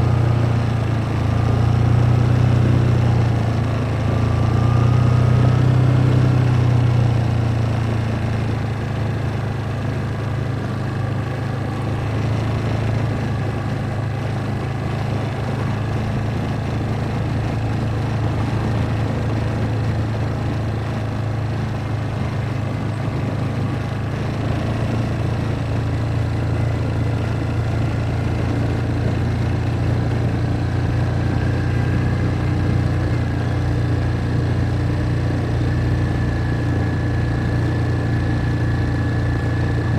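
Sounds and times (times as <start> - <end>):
atv engine running: 0.0 - 39.9.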